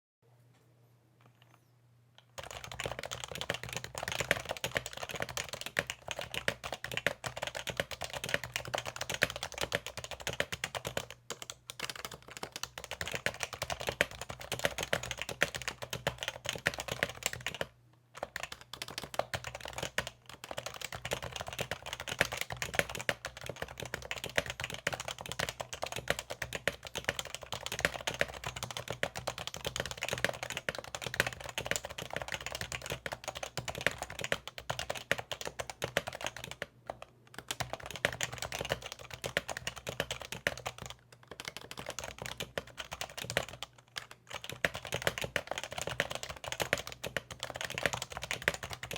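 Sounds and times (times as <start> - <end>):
fast keyboard typing: 2.4 - 48.9.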